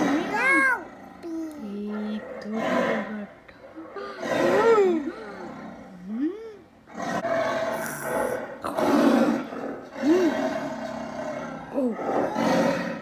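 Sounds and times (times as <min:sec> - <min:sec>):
tiger roaring: 0:06.9 - 0:13.0.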